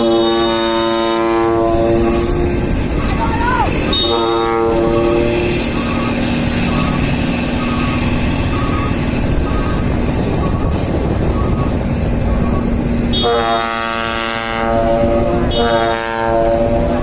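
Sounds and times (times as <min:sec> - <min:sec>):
truck air horn blasts: 0:00.0 - 0:02.6, 0:03.7 - 0:09.9, 0:13.1 - 0:17.0
engine running: 0:00.0 - 0:17.0
traffic noise: 0:00.0 - 0:17.0.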